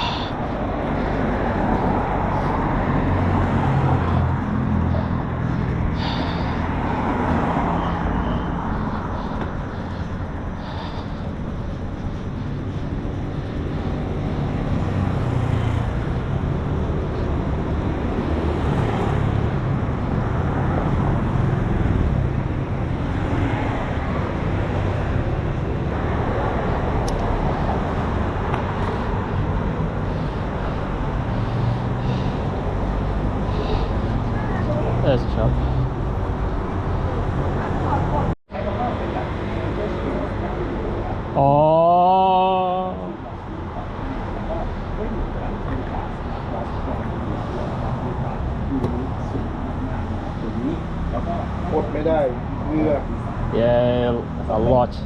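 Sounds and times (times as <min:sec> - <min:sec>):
road traffic passing: 0:00.0 - 0:55.0.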